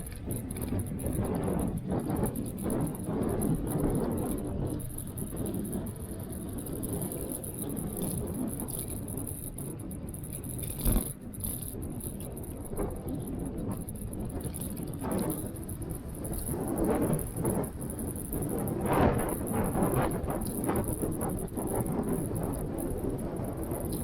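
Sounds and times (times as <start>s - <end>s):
scooter rattling: 0.0s - 24.0s
wind and road noise: 0.0s - 24.0s.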